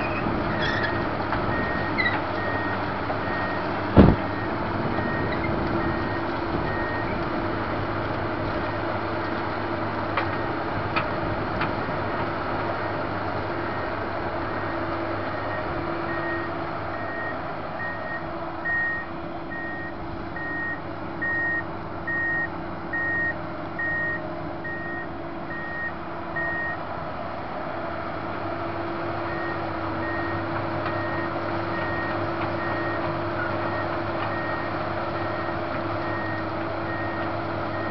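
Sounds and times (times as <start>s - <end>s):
diesel engine running: 0.0s - 37.9s
travel alarm beeping: 15.4s - 26.8s.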